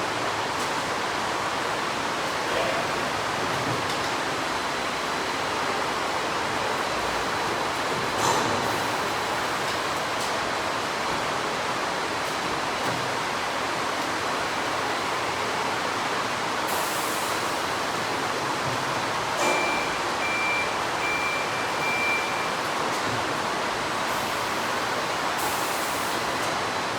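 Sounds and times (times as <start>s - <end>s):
factory machinery hiss: 16.6s - 18.5s, 24.0s - 26.6s
short high beeps: 19.4s - 22.6s.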